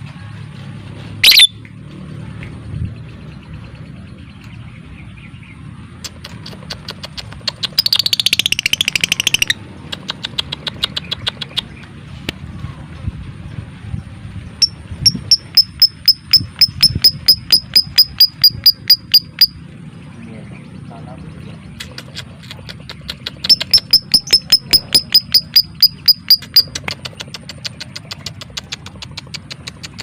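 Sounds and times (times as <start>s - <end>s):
lovebird clicking chatter: 1.2s - 1.6s, 6.0s - 11.8s, 14.6s - 19.6s, 21.8s - 30.0s
lovebird sharp high chirps: 1.2s - 1.6s, 6.0s - 11.7s, 14.6s - 19.6s, 21.8s - 30.0s.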